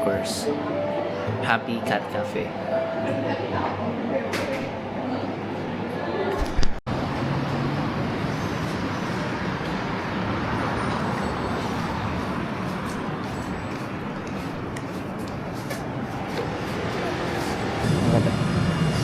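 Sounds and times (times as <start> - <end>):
traffic rumble and hiss: 6.9 - 19.0.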